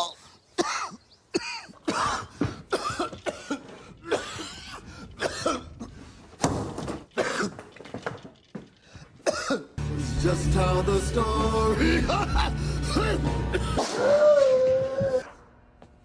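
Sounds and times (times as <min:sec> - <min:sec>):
man coughing: 0:00.6 - 0:06.0, 0:07.2 - 0:07.7, 0:09.2 - 0:09.8, 0:11.8 - 0:13.8.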